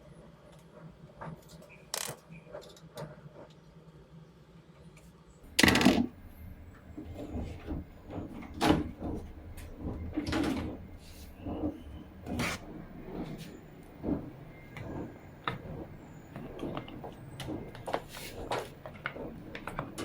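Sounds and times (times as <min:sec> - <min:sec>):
knocks and clunks: 0:05.5 - 0:20.0.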